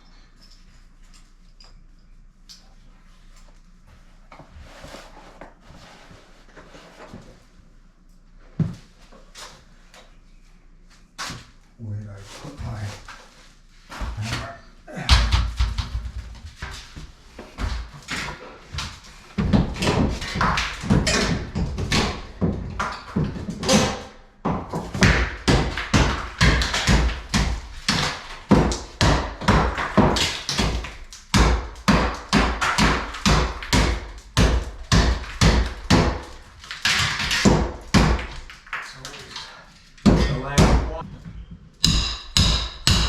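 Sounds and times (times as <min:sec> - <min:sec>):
hammering on a wall: 0:17.6 - 0:38.5, 0:40.0 - 0:41.1, 0:41.8 - 0:43.0.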